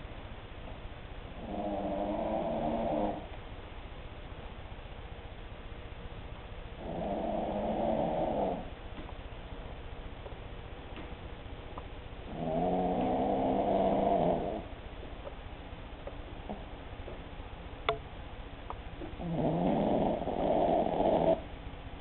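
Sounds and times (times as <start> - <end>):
dog snoring: 1.3 - 3.3, 6.8 - 8.8, 12.2 - 14.7, 19.1 - 21.5.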